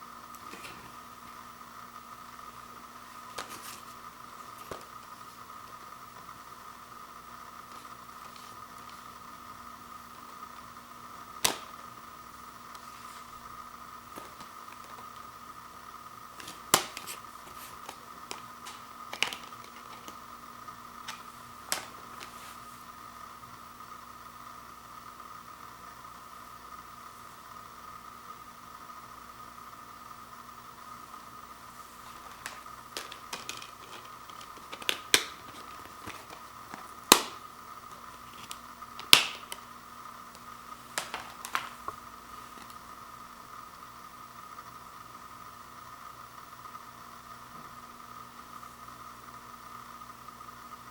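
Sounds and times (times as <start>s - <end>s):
faint hum: 0.0s - 50.9s
plastic case clicks and taps: 11.4s - 11.7s, 18.3s - 20.2s, 32.3s - 37.4s, 38.4s - 39.6s, 41.0s - 41.7s.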